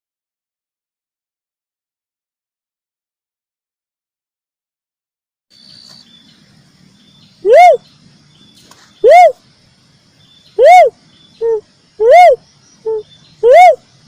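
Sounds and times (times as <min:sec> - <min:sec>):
dove cooing: 0:07.4 - 0:07.9, 0:09.0 - 0:09.4, 0:10.6 - 0:13.8.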